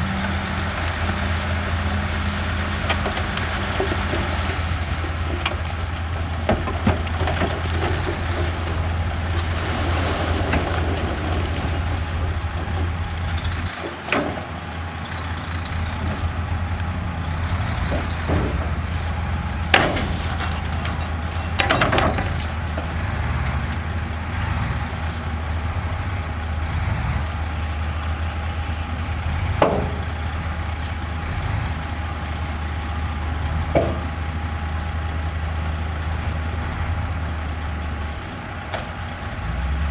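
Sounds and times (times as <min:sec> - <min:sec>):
diesel machinery drone: 0:00.0 - 0:39.9.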